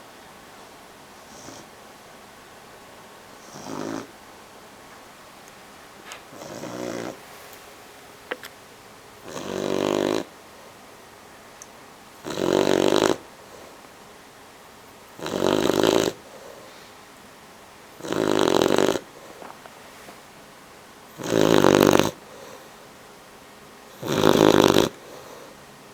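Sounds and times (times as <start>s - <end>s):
puppy snoring: 1.2s - 1.7s, 3.4s - 4.2s, 6.2s - 7.3s, 9.2s - 10.4s, 12.2s - 13.8s, 15.2s - 16.9s, 18.0s - 19.4s, 21.1s - 22.8s, 23.9s - 25.5s.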